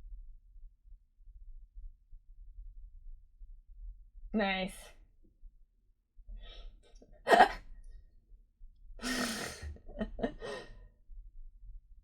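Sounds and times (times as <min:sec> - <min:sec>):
person coughing: 0:07.3 - 0:07.6
person sighing: 0:09.0 - 0:09.8
person breathing: 0:09.0 - 0:10.8.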